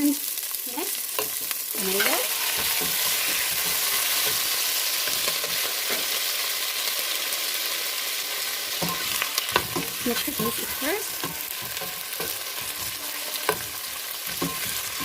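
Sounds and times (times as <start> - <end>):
food sizzling in hot oil: 0.0 - 15.0
faint stirring taps: 8.8 - 15.0.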